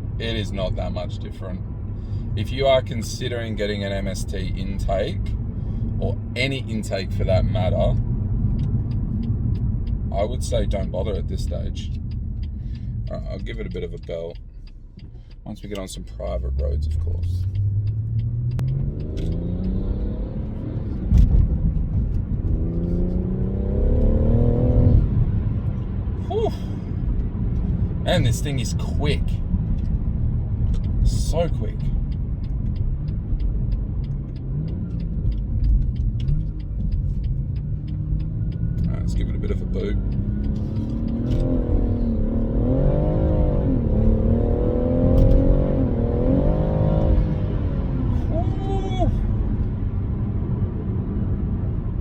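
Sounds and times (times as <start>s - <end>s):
car engine accelerating hard: 0.0s - 52.0s
gear change thump: 16.9s - 52.0s.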